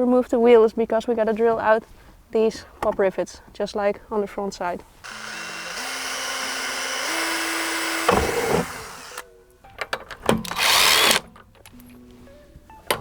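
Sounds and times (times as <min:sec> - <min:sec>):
power drill drilling metal: 0:05.0 - 0:09.3, 0:10.5 - 0:11.3.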